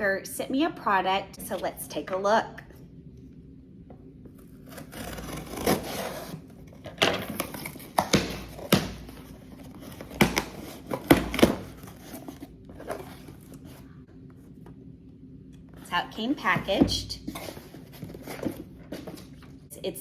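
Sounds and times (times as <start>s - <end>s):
packaging rustling and crinkling: 17.3s - 19.6s.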